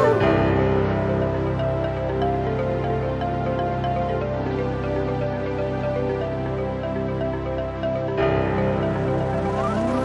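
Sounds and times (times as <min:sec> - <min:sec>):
rising synth glide: 0:00.0 - 0:01.3, 0:08.8 - 0:10.0.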